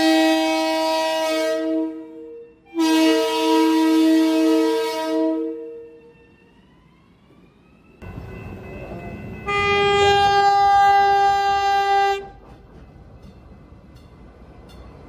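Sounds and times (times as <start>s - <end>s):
train horn blast: 0.0s - 6.0s, 8.4s - 12.4s
train rumbling: 0.0s - 15.0s.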